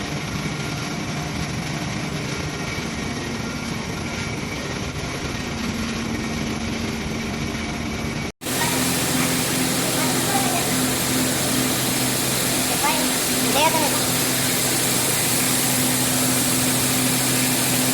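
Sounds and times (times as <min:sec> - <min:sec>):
machinery hum: 0:08.4 - 0:17.9.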